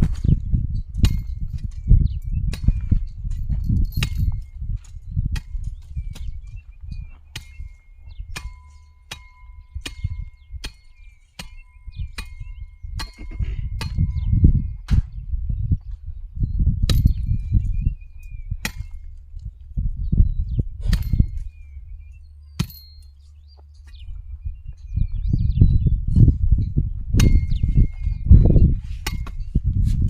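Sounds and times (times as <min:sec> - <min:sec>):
hand tool chopping soil: 0:07.2 - 0:14.0, 0:18.6 - 0:19.1, 0:20.8 - 0:21.6.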